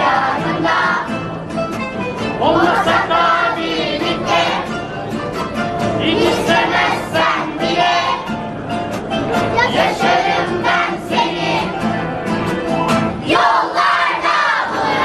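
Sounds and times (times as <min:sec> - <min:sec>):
children's choir singing: 0:00.0 - 0:01.4, 0:02.4 - 0:04.8, 0:05.9 - 0:08.4, 0:09.4 - 0:12.0, 0:13.2 - 0:15.0.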